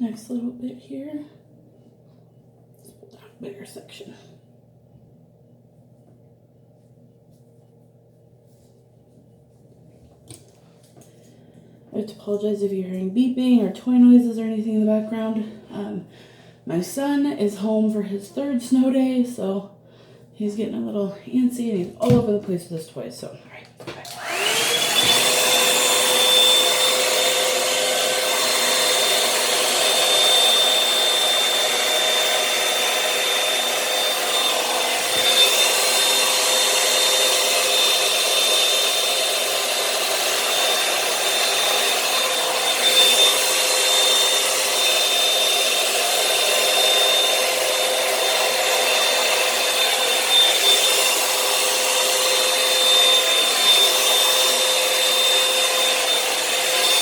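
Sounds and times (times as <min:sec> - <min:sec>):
hair dryer motor whine: 0:24.0 - 0:57.0.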